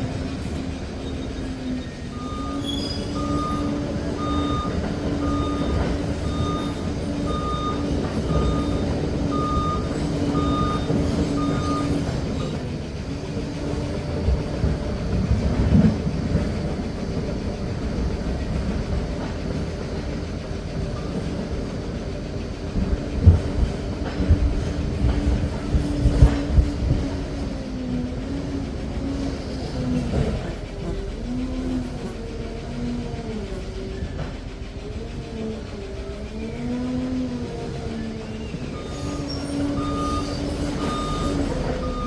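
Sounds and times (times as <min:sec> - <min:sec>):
dozer engine under load: 0:00.0 - 0:42.0
tracks clattering: 0:00.0 - 0:42.0
reversing alarm beeping: 0:01.1 - 0:12.6, 0:38.3 - 0:42.0.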